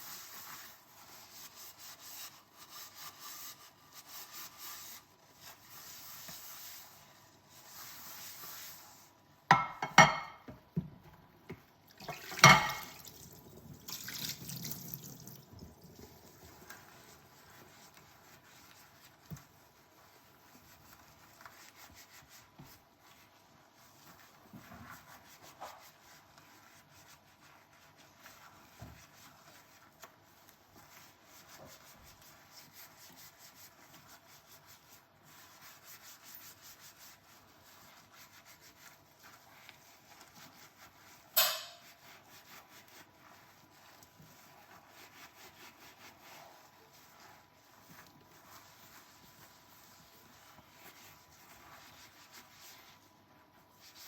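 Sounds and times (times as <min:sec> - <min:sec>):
dishes clinking together: 0:09.5 - 0:10.5, 0:12.1 - 0:13.1, 0:41.4 - 0:41.9
scrubbing dishware: 0:09.5 - 0:10.5, 0:12.0 - 0:15.4, 0:41.4 - 0:42.1.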